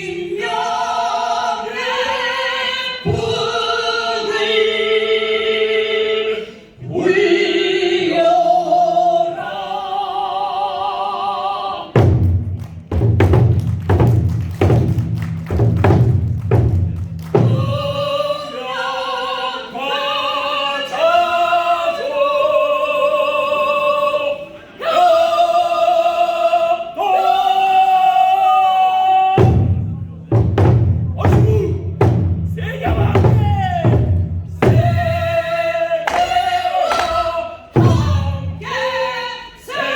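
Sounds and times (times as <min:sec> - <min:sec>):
person singing with vibrato: 0:00.0 - 0:12.0, 0:17.4 - 0:29.5, 0:34.6 - 0:39.9
barrel drums beating rapidly: 0:12.0 - 0:18.0, 0:29.4 - 0:38.7.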